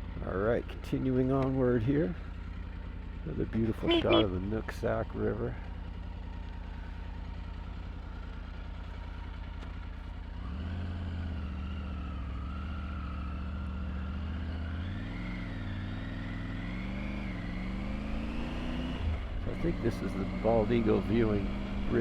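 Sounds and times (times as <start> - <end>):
motorcycle engine running: 0.0 - 22.0.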